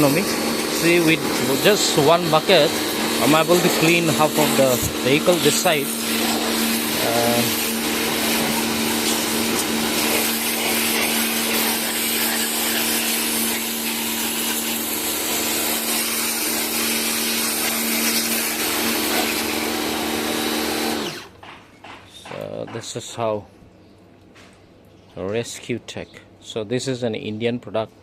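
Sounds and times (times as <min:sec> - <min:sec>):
water jet hissing: 0:00.0 - 0:21.3
pressure washer motor hum: 0:00.0 - 0:21.4.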